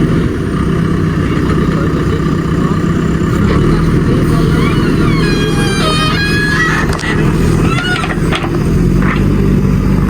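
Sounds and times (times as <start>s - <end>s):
diesel engine rumbling: 0.0s - 10.0s.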